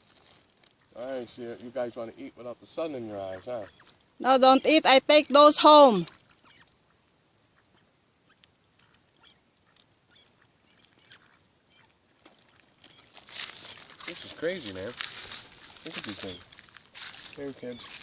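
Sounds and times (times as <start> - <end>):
faint steady high hiss: 0.0 - 18.0
ducks pecking at shells: 7.6 - 18.0.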